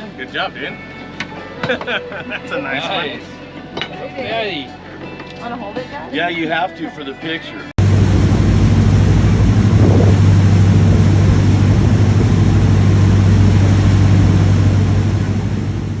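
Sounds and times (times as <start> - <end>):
boat engine droning: 7.8 - 16.0
rush of wind and water: 7.8 - 16.0.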